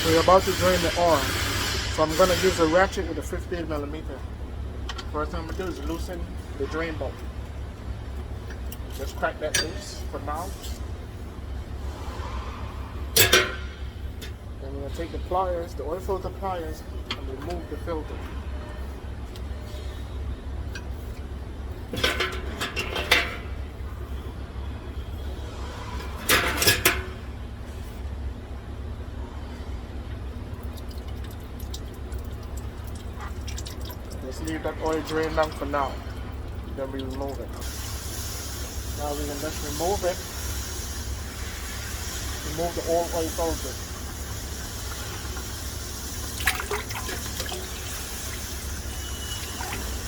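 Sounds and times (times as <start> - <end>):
oil running and dripping: 0.0 - 50.0
steady low hum: 0.0 - 50.0
oil dripping ticks: 7.1 - 9.2, 30.1 - 37.9.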